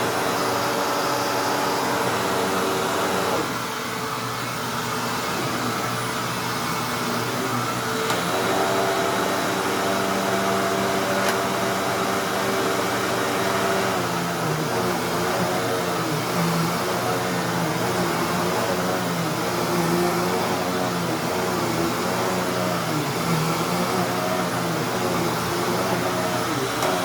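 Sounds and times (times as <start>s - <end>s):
vacuum cleaner motor hum: 0.0s - 27.0s.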